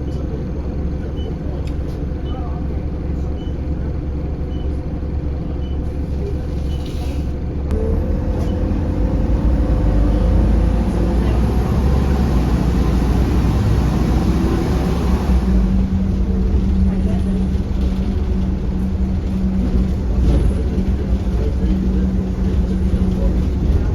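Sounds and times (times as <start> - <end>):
bus diesel engine running: 0.0 - 23.9.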